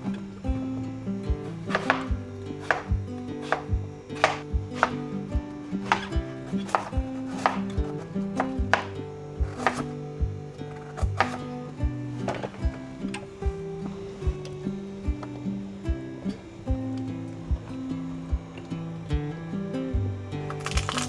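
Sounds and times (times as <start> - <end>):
soft background music: 0.0 - 21.0
knife chopping on cutting board: 1.7 - 5.0, 5.8 - 9.9, 10.8 - 11.4.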